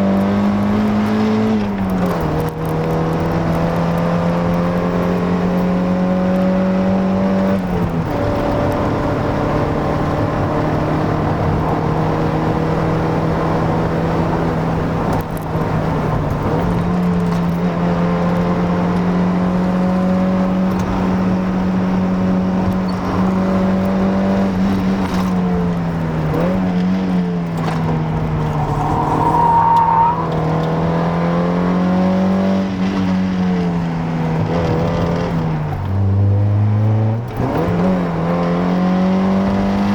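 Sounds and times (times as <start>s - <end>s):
car engine running: 7.6s - 32.1s
brief high squeal: 28.4s - 30.5s.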